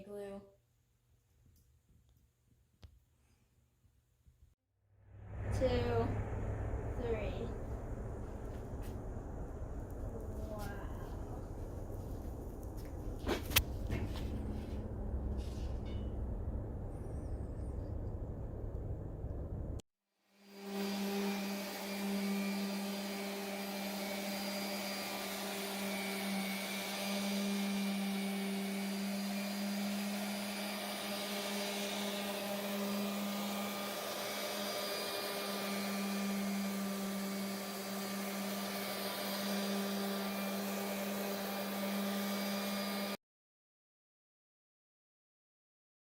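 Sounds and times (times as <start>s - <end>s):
electric motor machine humming: 20.5s - 43.2s.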